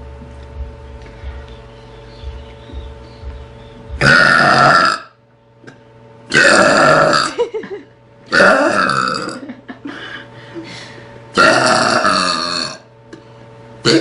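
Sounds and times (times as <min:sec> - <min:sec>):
girl burping loudly: 0:04.0 - 0:05.2, 0:06.3 - 0:07.4, 0:08.3 - 0:09.5, 0:11.4 - 0:12.9.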